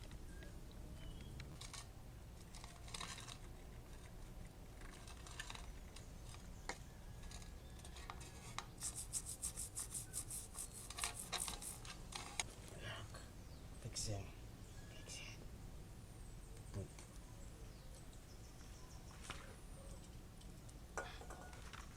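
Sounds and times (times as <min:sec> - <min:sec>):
toothbrush scrubbing bicycle chain: 0:08.8 - 0:11.8.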